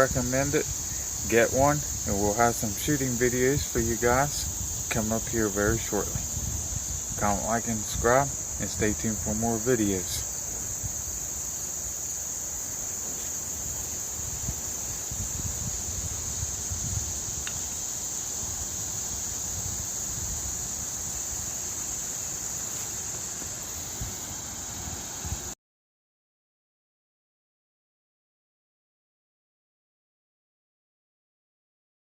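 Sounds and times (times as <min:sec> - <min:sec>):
crickets trilling: 0:00.0 - 0:25.6.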